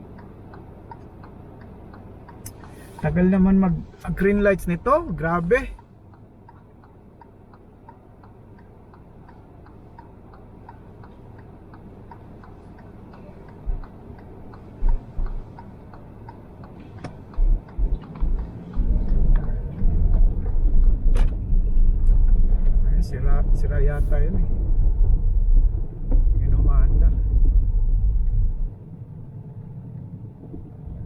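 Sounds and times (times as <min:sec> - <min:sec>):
low car rumble: 0:00.0 - 0:31.0
turn signal ticking: 0:00.0 - 0:31.0
low thumps: 0:14.8 - 0:15.5, 0:17.4 - 0:28.7.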